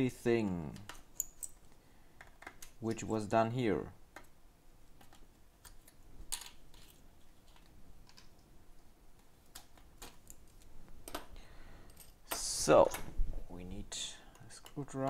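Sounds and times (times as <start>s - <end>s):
small parts and tools clicking: 0.4s - 3.0s, 9.2s - 13.0s.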